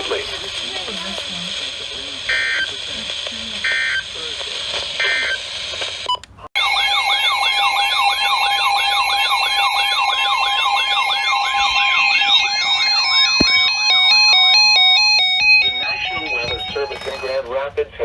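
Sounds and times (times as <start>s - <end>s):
weather radio alert alarms: 0.0s - 18.0s
electronic beeps of changing pitch: 6.1s - 17.4s.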